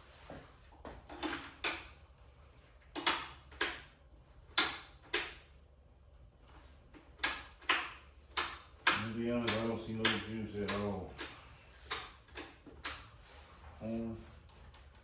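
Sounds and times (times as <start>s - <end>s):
ignition switch clicking: 3.0s - 3.9s, 4.6s - 5.4s, 7.2s - 13.1s.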